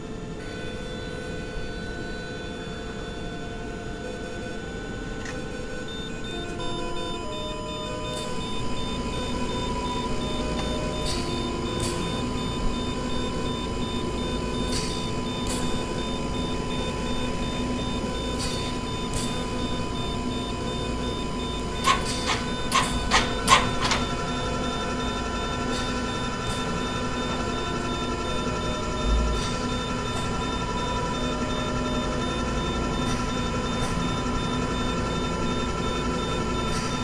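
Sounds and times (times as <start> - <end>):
electronic hum with held tone: 0.0 - 37.0
soft machine clicks: 21.7 - 24.4.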